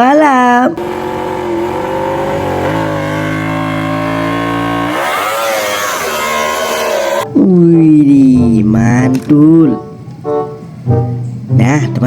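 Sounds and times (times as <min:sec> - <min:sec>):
motorcycle engine revving: 0:00.8 - 0:07.3.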